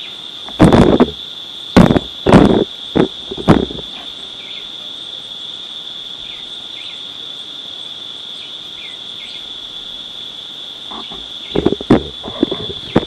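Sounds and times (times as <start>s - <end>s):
crickets chirping: 0.0s - 13.0s
loud sudden thump: 1.8s - 3.8s.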